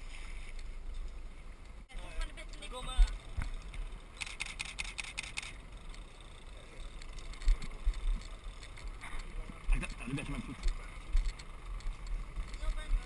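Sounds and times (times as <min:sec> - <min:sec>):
sharp mechanical clicks: 0:03.1 - 0:06.1.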